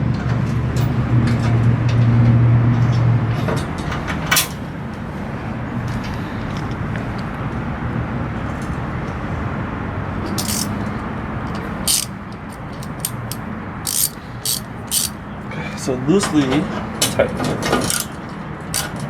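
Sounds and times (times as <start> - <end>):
rushing background noise: 3.2 - 16.1
sharp click: 11.6 - 15.2.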